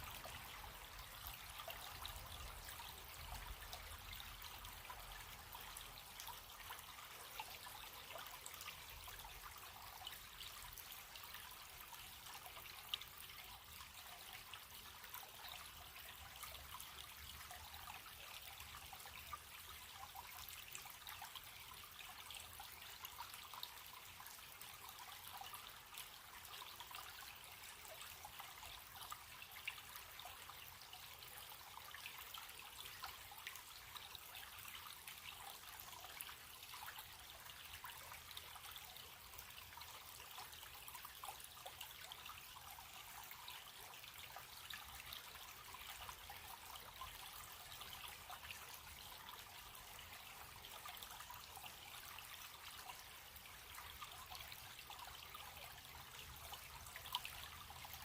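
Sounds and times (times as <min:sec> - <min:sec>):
stream trickling: 0:00.0 - 0:58.0.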